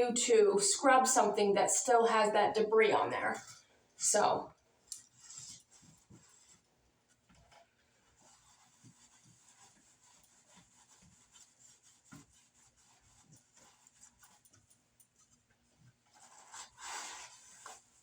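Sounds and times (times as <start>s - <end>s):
cloth rubbing fan blade: 8.0s - 14.6s, 16.1s - 18.0s.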